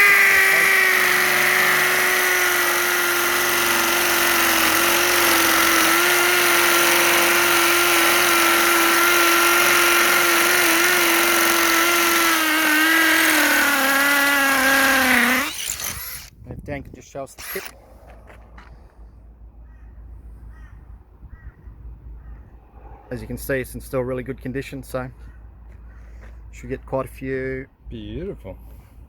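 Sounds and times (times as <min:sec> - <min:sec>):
drill boring into masonry: 0:00.0 - 0:16.3, 0:17.4 - 0:17.8.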